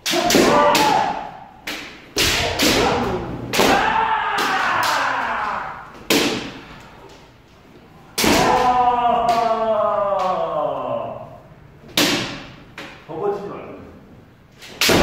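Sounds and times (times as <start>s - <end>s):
people shouting: 0.0s - 1.6s, 2.2s - 6.8s, 8.1s - 11.4s
bamboo sword strikes: 0.0s - 5.0s, 6.1s - 6.6s, 8.2s - 8.7s, 12.0s - 12.6s, 14.8s - 15.0s.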